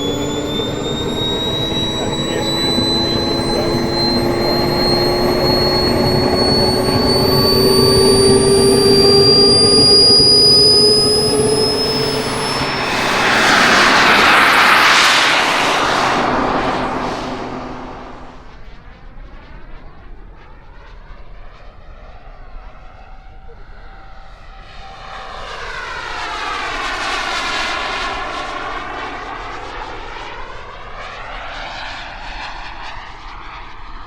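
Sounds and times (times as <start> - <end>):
jet rushing pass: 0.0 - 19.0
model jet turbine whine: 0.0 - 34.0.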